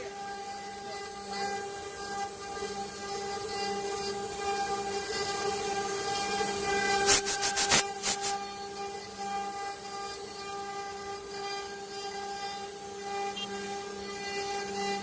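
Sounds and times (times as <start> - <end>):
machine spindle whine: 0.0 - 15.0
short loud noise bursts: 7.0 - 8.4.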